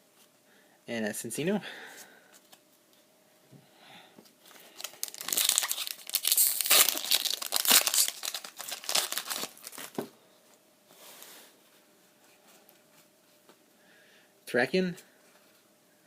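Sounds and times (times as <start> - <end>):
foil wrapper tearing and crinkling: 4.6 - 10.0.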